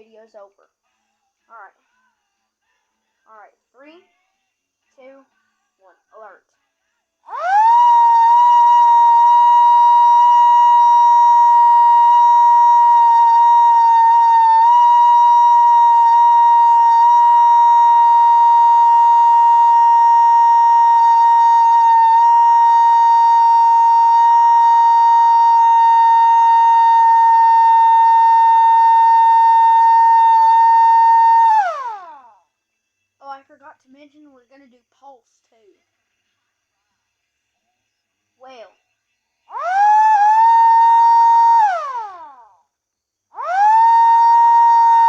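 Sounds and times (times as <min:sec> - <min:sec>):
electric siren steady tone: 0:07.3 - 0:32.4, 0:39.5 - 0:42.5, 0:43.4 - 0:45.0.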